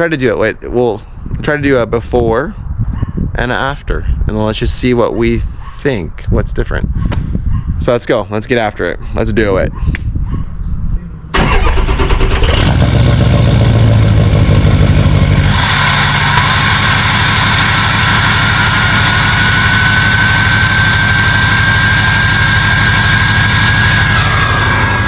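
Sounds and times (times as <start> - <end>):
diesel truck engine running: 11.4 - 25.0.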